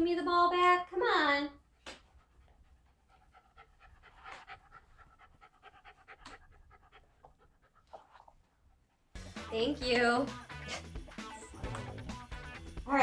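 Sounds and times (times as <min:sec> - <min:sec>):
dog panting: 0:01.6 - 0:09.2.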